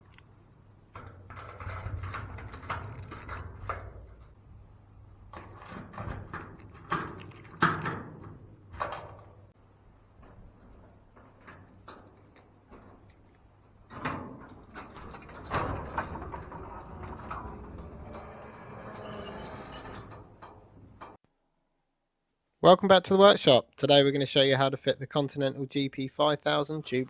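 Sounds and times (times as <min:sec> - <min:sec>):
handling clicks knocks and scrapes: 0:05.3 - 0:09.3.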